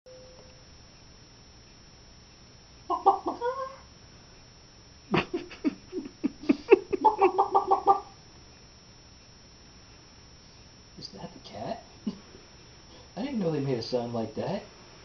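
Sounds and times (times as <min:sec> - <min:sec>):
person imitating a chicken: 0:02.9 - 0:03.9, 0:06.9 - 0:08.1.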